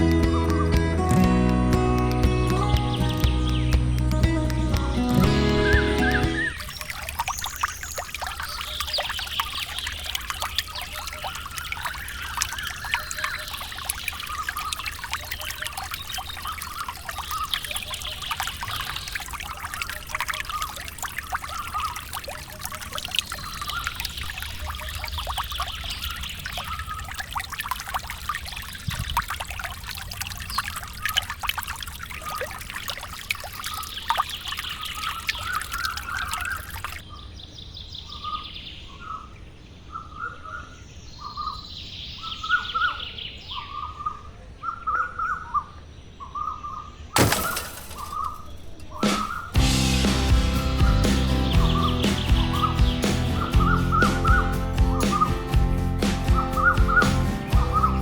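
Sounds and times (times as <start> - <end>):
high chirps: 0.0 - 9.8, 49.0 - 58.0
trickling pouring crackles: 0.0 - 37.0, 47.2 - 58.0.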